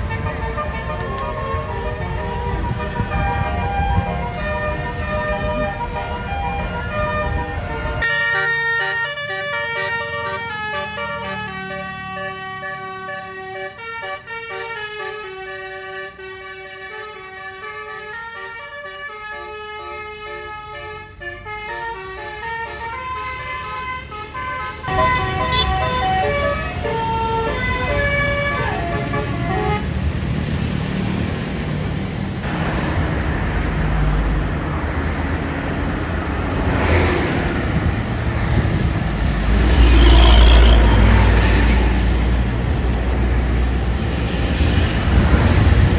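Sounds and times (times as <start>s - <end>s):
bus multi-tone air horn melody: 0.0s - 30.2s
bus engine rumble: 0.0s - 45.9s
road noise: 0.0s - 45.9s.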